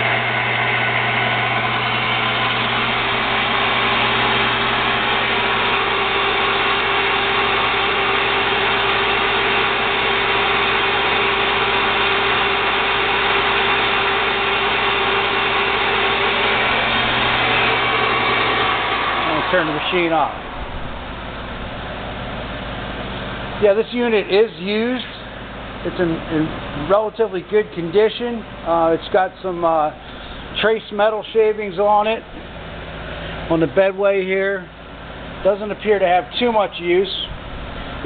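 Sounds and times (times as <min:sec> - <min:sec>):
metal lathe running: 0:00.0 - 0:26.3.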